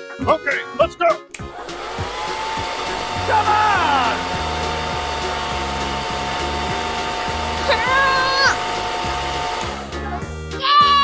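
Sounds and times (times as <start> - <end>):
music bass line: 0.0 - 11.0
motor-like whirring: 1.6 - 10.1.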